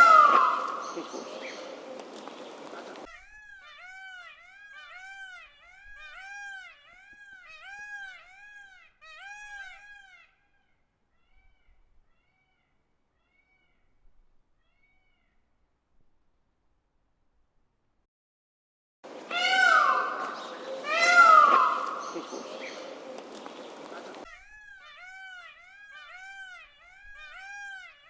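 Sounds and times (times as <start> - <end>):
peafowl calling: 0.0 - 10.2, 19.1 - 27.9.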